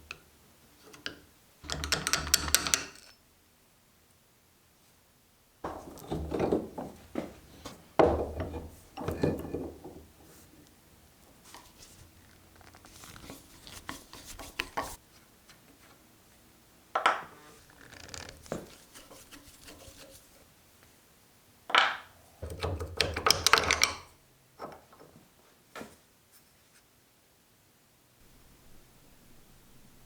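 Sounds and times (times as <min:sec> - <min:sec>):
knocks clicks and scrapes: 0:05.7 - 0:10.2
crackling and scraping: 0:11.4 - 0:15.0, 0:17.5 - 0:20.4.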